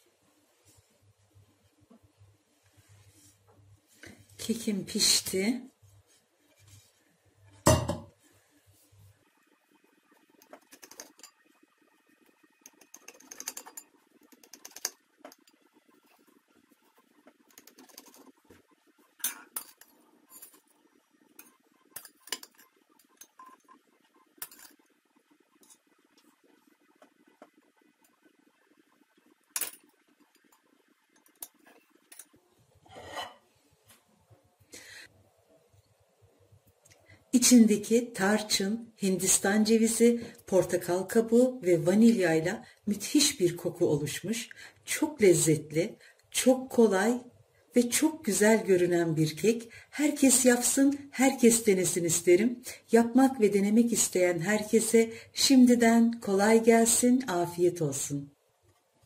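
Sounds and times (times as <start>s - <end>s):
dishes and utensils clinking: 7.7s - 8.1s, 19.2s - 20.6s.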